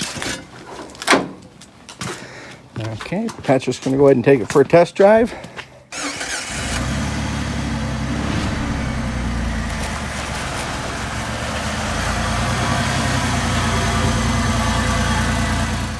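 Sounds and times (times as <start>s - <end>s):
car engine running: 7.2s - 15.9s.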